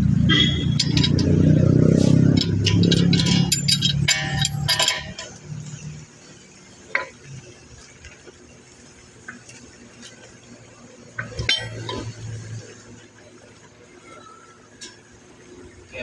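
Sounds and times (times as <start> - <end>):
steel parts clanking: 0.3 - 6.0, 11.2 - 12.4
light metal ticks: 0.6 - 1.5, 2.2 - 5.4.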